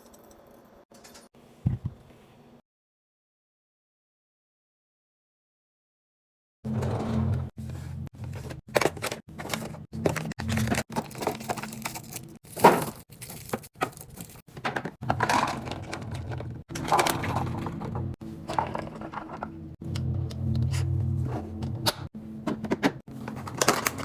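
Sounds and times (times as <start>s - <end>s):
kitchen items clattering: 6.7s - 19.8s, 22.4s - 24.0s
packaging crinkling: 9.4s - 14.4s.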